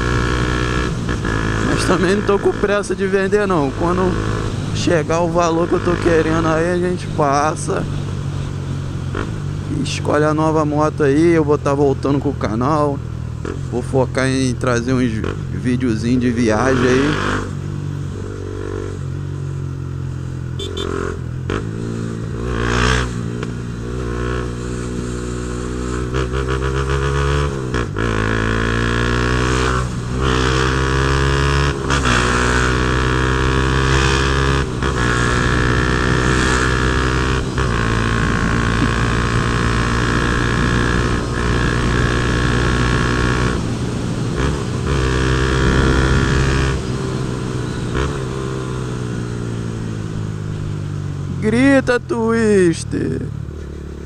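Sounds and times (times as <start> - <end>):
motorcycle accelerating through gears: 0.0 - 54.0.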